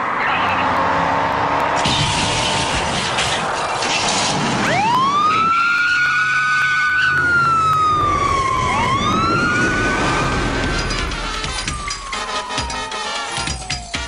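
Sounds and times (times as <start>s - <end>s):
police car siren wailing: 4.6s - 14.0s.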